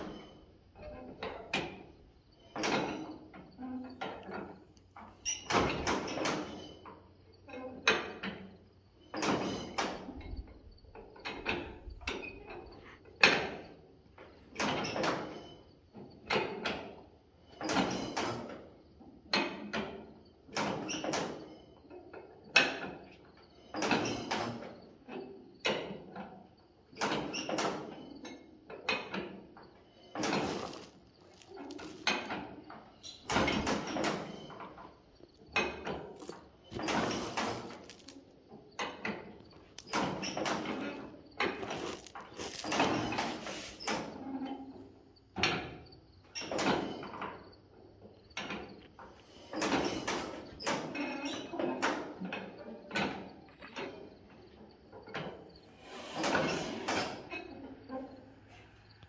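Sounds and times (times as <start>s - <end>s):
short hiss: 55.7s - 56.9s.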